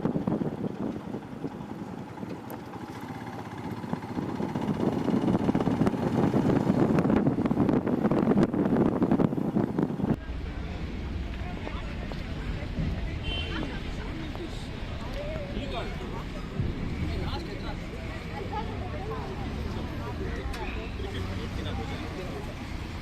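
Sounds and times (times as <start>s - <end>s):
wind buffeting microphone: 0.0s - 2.3s, 3.5s - 19.2s
motorcycle engine: 0.0s - 23.0s.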